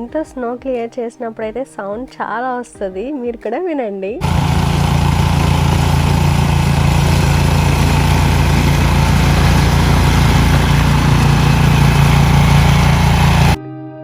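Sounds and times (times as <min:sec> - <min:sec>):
snowblower engine running: 0:04.2 - 0:13.6.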